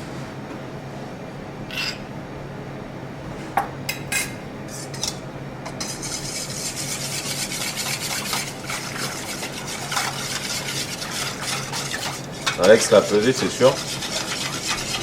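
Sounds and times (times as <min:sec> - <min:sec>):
batter stirred in a bowl: 0:05.7 - 0:15.0
kitchen utensils clinking: 0:08.0 - 0:15.0.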